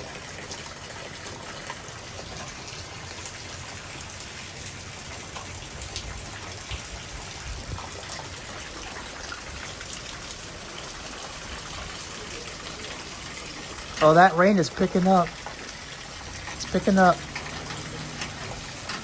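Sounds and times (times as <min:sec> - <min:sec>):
rain falling: 0:00.0 - 0:19.0
wind on microphone: 0:06.1 - 0:08.0.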